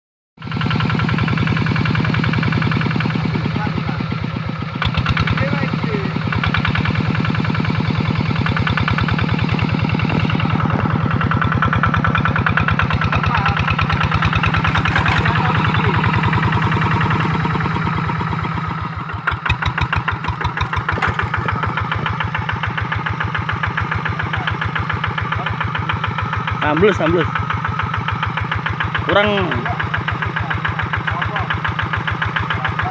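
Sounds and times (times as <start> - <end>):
tractor engine running: 0.4 - 32.9.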